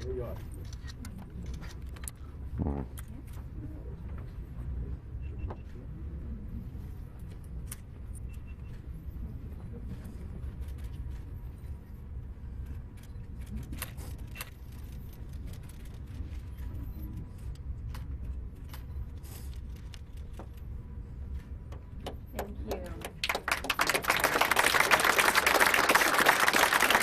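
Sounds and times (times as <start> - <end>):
low room rumble: 0.0 - 27.0.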